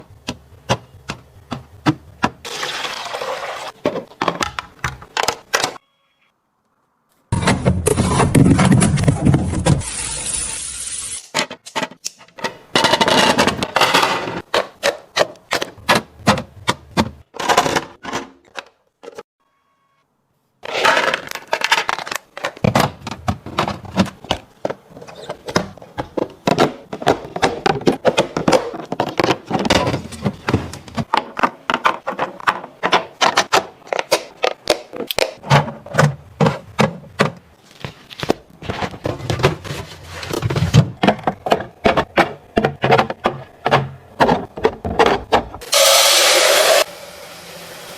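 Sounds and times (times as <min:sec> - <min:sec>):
plastic bins clicking and scraping: 0:03.7 - 0:05.8, 0:07.3 - 0:09.8, 0:11.3 - 0:19.3, 0:20.6 - 0:45.6.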